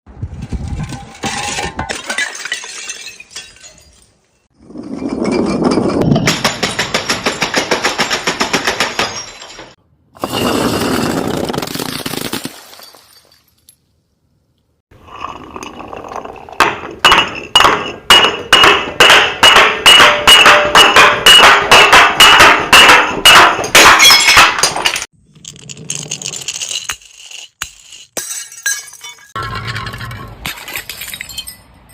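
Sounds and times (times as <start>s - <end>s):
glass bottles breaking: 1.2s - 4.5s, 5.3s - 13.8s, 16.5s - 31.8s
glass shards crunching: 24.0s - 31.7s.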